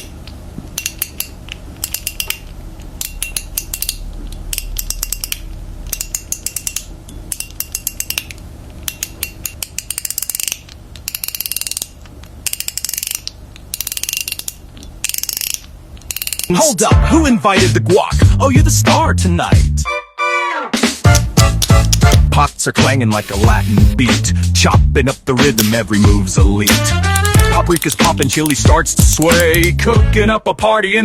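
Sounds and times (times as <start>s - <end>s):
fidget slider clicking: 0.0s - 16.6s, 21.1s - 22.2s, 25.5s - 26.0s, 26.6s - 29.8s
fidget slider sliding rasps: 0.0s - 16.6s, 21.1s - 22.2s, 26.6s - 29.8s.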